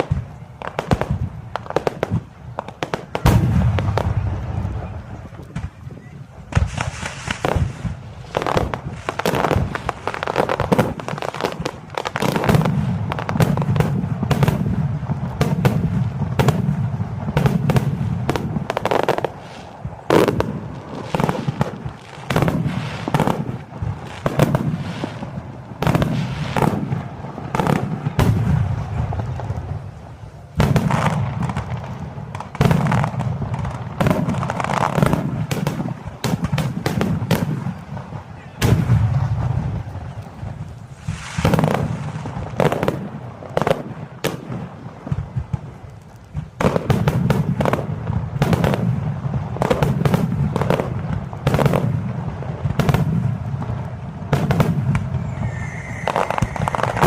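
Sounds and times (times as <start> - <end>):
fireworks shells bursting: 6.5 - 14.5, 54.3 - 57.0.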